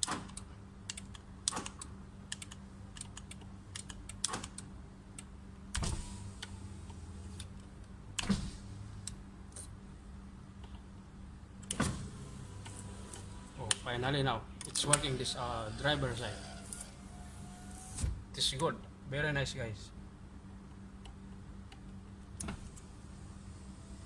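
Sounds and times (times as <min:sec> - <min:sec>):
electric window motor running: 0:05.8 - 0:07.5, 0:11.7 - 0:14.0, 0:14.6 - 0:18.2, 0:22.4 - 0:24.0.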